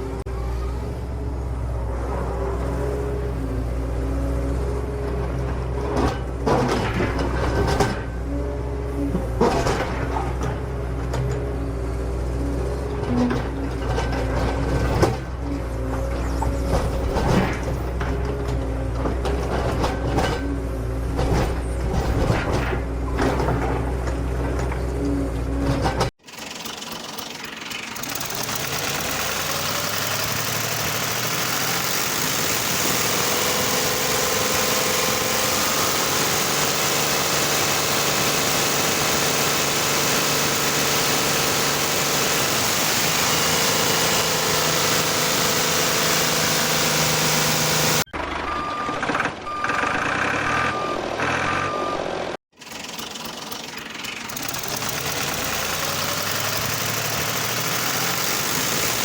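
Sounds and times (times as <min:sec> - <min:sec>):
small machine motor running: 0:26.2 - 0:48.1, 0:52.6 - 0:59.0
short beeps: 0:48.4 - 0:52.2.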